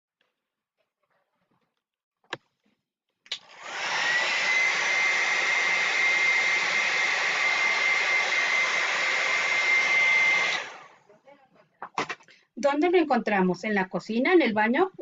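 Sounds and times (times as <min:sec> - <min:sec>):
hair dryer motor whine: 0:03.3 - 0:11.0.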